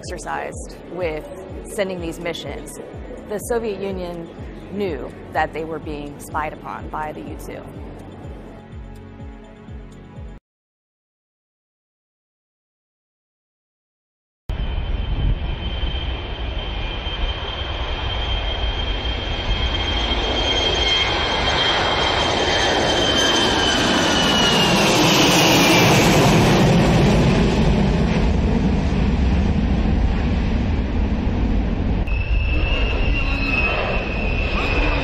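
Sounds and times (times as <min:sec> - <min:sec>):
jet aircraft flying past: 0:14.5 - 0:35.0.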